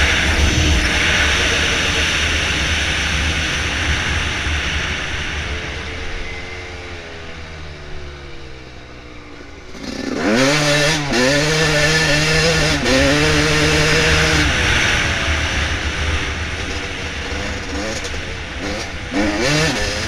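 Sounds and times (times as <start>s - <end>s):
dirt bike engine revving: 9.6s - 20.0s.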